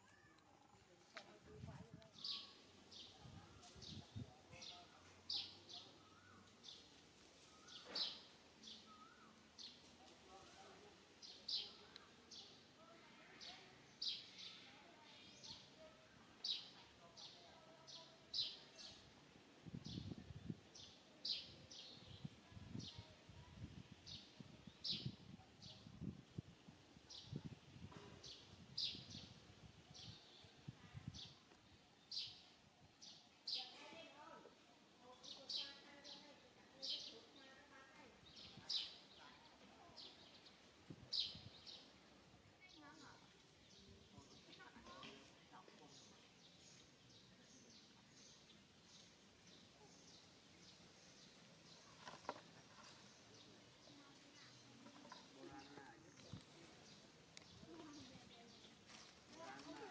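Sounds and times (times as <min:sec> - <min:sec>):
rustling: 0:51.2 - 0:59.9.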